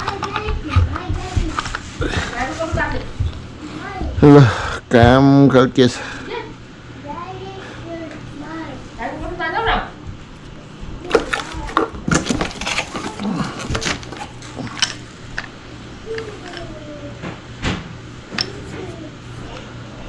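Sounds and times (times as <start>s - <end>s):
handling clicks and knocks: 11.1s - 15.5s.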